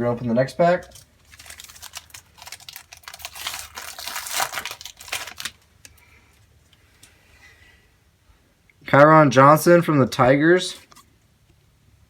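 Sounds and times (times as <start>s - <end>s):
wrapper crinkling and tearing: 0.8s - 6.1s.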